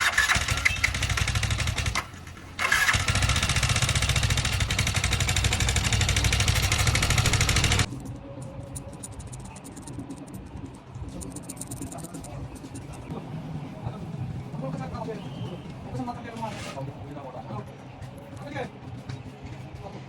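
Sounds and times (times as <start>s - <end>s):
motorcycle engine running: 0.0s - 7.9s.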